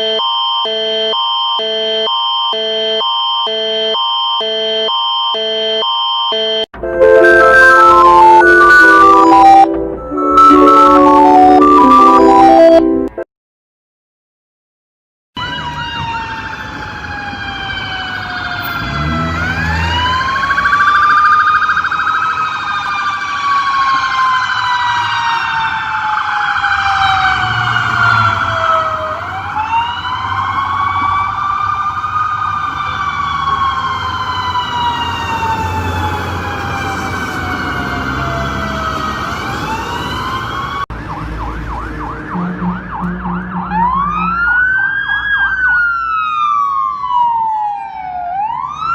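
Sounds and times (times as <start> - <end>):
rapidly pulsing alarm tone: 0.0 - 11.9, 20.0 - 23.2
warning siren wailing: 0.0 - 13.1, 15.4 - 48.9.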